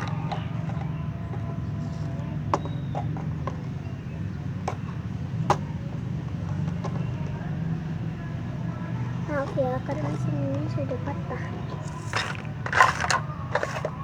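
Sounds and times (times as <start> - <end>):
plastic toy parts clicking: 11.8 - 14.0.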